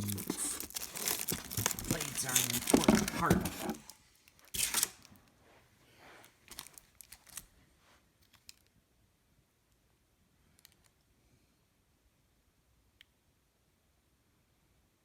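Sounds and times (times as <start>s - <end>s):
packaging rustling: 0.0s - 5.1s, 6.5s - 7.5s.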